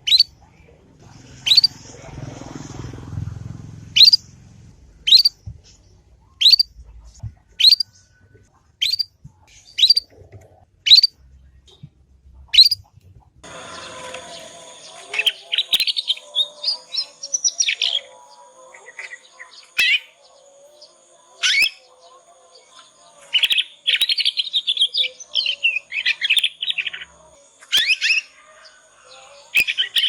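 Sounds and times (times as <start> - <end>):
canary chirping and warbling: 0.0 - 0.6, 1.3 - 1.9, 4.0 - 4.3, 5.0 - 8.0, 8.8 - 11.2, 12.4 - 30.0
steady hum: 13.3 - 17.2.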